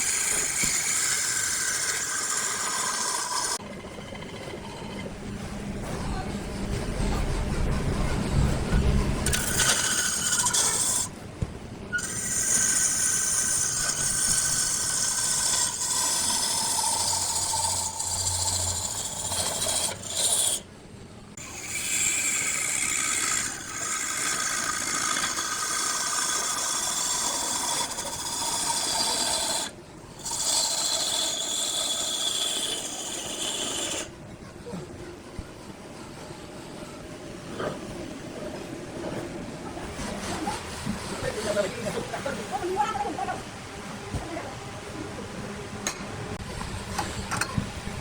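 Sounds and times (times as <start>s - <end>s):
tool rasping on spinning wood: 0.0s - 5.1s, 7.0s - 11.1s, 12.0s - 20.7s, 21.4s - 34.2s, 39.8s - 43.4s
lathe whine: 0.0s - 11.2s, 11.9s - 20.7s, 21.3s - 34.2s.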